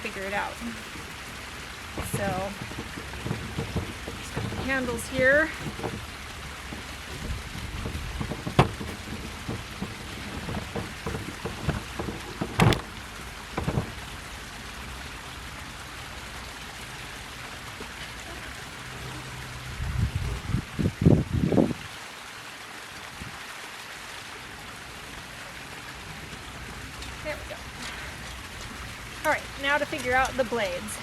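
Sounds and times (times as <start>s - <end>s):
metal parts knocking and clicking: 0.2s - 14.1s.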